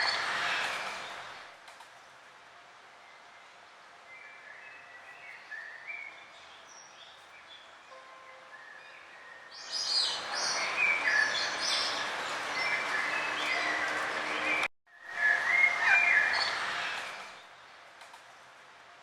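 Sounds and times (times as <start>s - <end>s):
songbirds singing and chirping: 3.0s - 16.6s.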